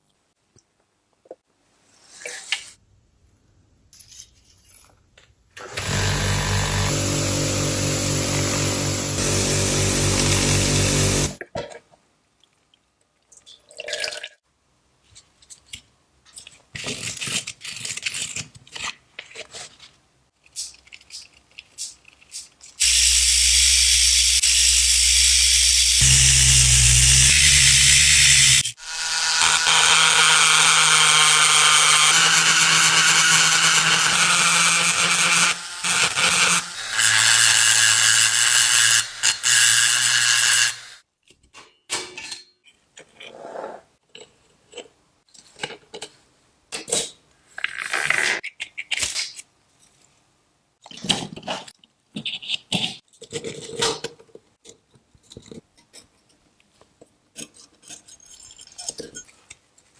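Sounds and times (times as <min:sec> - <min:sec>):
motorised tool running: 0:05.6 - 0:11.4, 0:22.8 - 0:41.0
clicks and scrapes of handling: 0:15.1 - 0:22.8.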